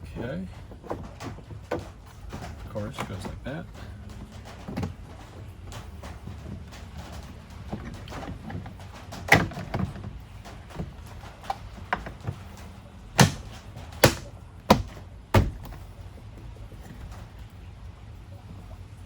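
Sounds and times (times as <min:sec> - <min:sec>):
plastic trim snapping into place: 0:13.2 - 0:15.8
loud thumps: 0:13.2 - 0:15.9.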